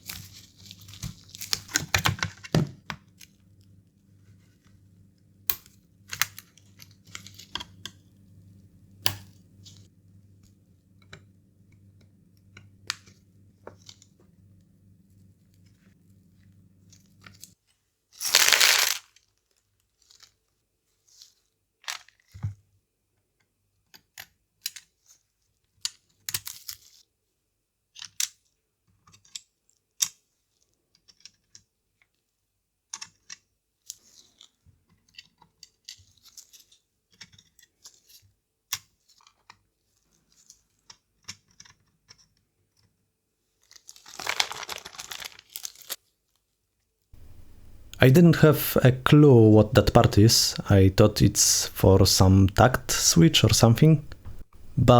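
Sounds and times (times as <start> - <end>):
rustling tearing sounds: 18.2 - 19.0, 43.7 - 46.0.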